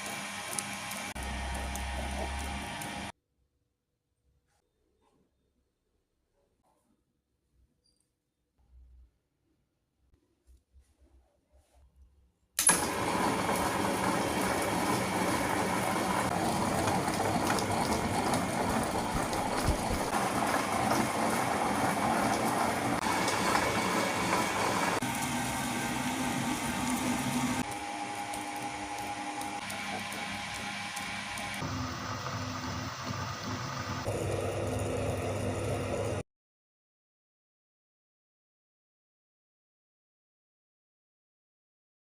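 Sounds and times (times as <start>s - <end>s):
grinding machine motor running: 0.0s - 3.1s, 12.7s - 36.2s.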